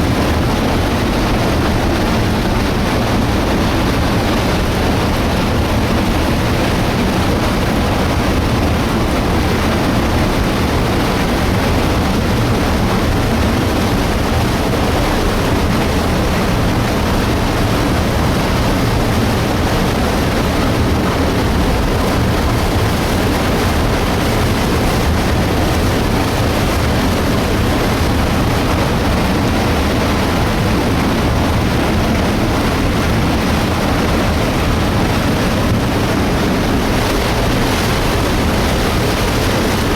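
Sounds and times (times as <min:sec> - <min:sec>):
debris flow rushing down channel: 0:00.0 - 0:39.9.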